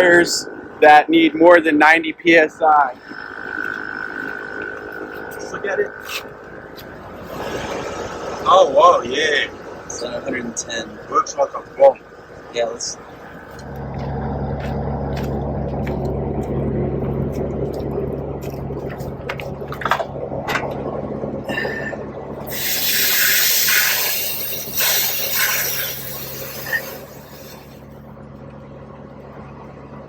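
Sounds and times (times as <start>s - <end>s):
air compressor humming: 0.0s - 28.4s
air hissing: 22.5s - 27.9s.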